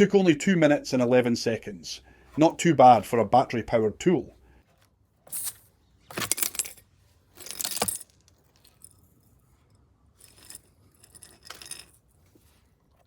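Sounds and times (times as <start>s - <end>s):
clinking rattling handling sounds: 5.3s - 12.6s.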